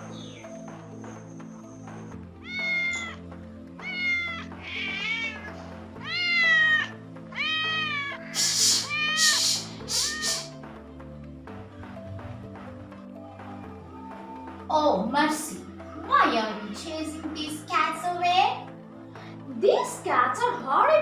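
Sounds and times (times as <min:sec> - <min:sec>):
background music: 0:00.0 - 0:21.0
cats meowing: 0:02.4 - 0:10.5
cat hissing: 0:03.8 - 0:10.6.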